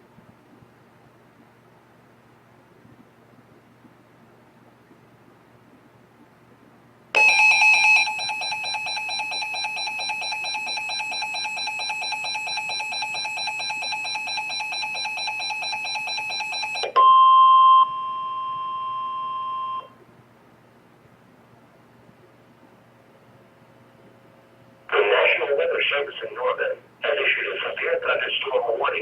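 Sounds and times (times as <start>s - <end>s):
pulsing electronic alarm tone: 7.2s - 19.9s.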